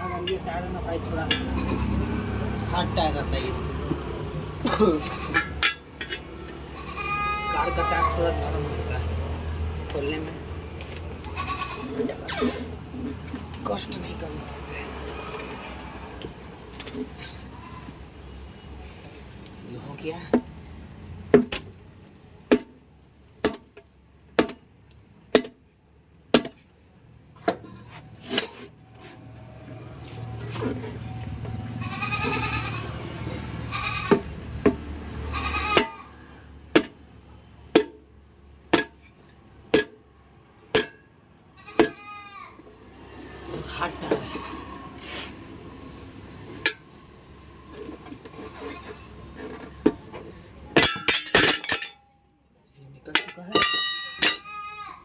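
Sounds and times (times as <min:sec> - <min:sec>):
metal tyre lever clanks: 0:05.3 - 0:06.6, 0:49.4 - 0:52.2, 0:53.1 - 0:54.6
rubber tyre scraping: 0:44.1 - 0:45.6, 0:47.8 - 0:50.1
hammer striking metal: 0:50.8 - 0:52.1, 0:53.1 - 0:54.5.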